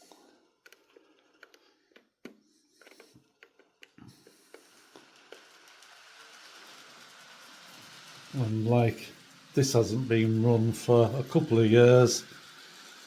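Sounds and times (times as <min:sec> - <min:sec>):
model train clicks and taps: 0:00.6 - 0:08.3.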